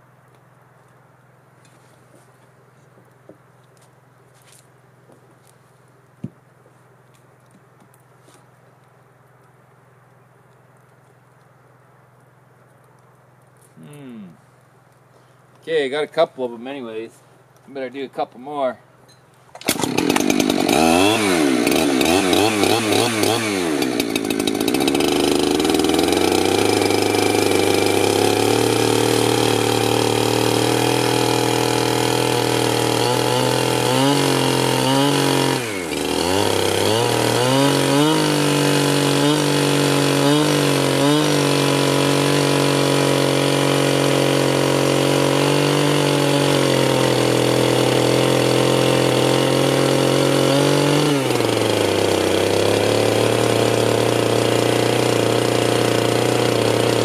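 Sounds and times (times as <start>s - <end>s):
chainsaw running at high revs: 19.6s - 57.0s.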